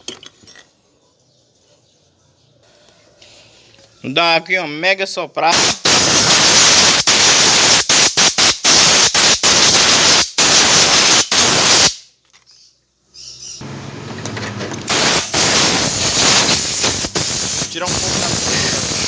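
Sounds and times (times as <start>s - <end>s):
compressed air blow gun blasting: 5.5s - 12.0s, 13.6s - 19.0s.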